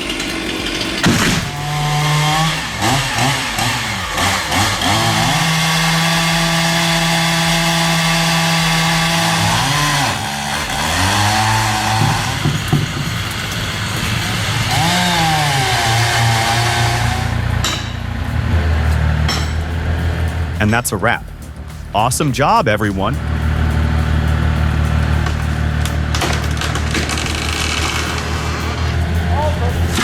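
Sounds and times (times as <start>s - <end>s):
chainsaw engine revving: 0.0s - 17.7s, 23.2s - 30.0s
sharp knock: 0.7s - 13.4s.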